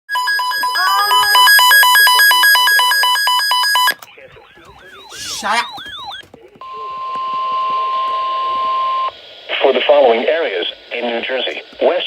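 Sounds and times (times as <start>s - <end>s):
warbling tones: 3.9s - 6.2s
buzzy two-pitch alert tone: 4.3s - 6.2s
burst of static: 7.0s - 12.0s.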